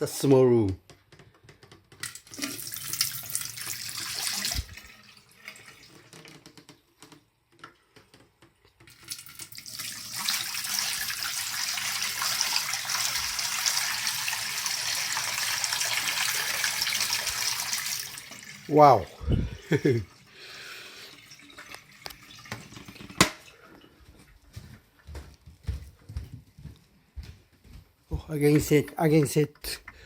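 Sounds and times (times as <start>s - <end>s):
water pouring into a sink: 2.0s - 6.6s, 8.8s - 23.6s.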